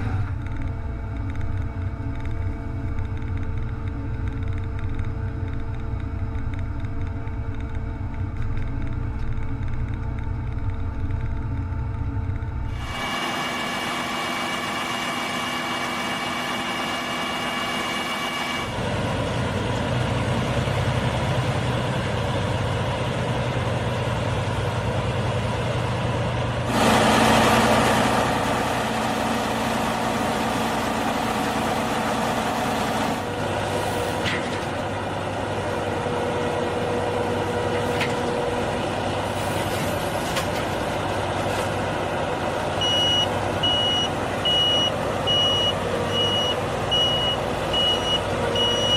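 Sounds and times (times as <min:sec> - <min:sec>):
combine harvester running: 0:00.0 - 0:48.9
reversing alarm beeping: 0:42.8 - 0:48.9.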